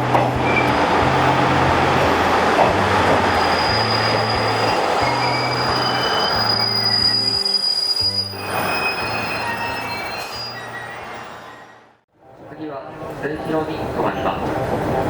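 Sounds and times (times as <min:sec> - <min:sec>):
train wheels rumbling on rail: 0:00.0 - 0:10.4
high wheel squeal: 0:00.3 - 0:12.0.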